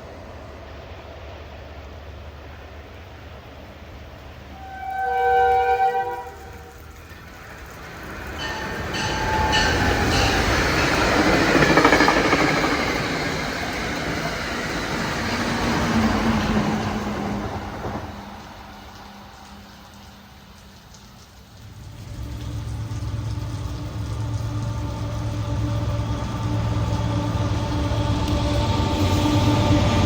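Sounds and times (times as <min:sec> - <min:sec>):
train rumbling past: 0:00.0 - 0:30.0
wheels clacking on rails: 0:00.0 - 0:30.0
train horn blast: 0:04.4 - 0:07.1, 0:08.5 - 0:10.4.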